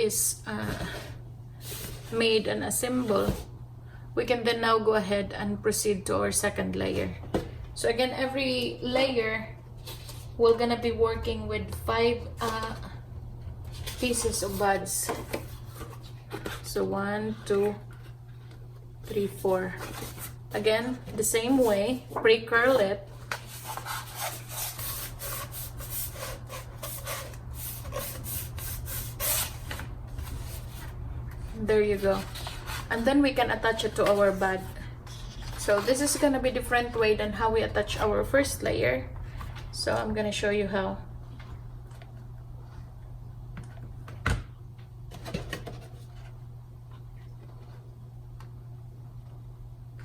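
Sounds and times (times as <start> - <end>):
steady low hum: 0.0 - 50.0
stiff paper rubbing and scraping: 23.1 - 33.1.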